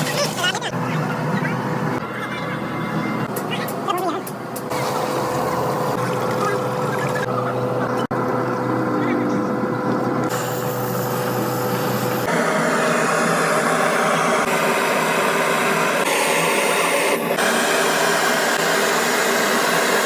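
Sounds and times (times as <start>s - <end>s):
industrial machinery running: 0.0s - 20.0s.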